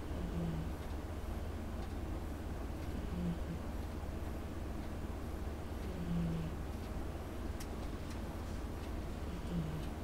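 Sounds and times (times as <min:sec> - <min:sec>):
cat snoring: 0:06.0 - 0:06.5, 0:09.3 - 0:09.8.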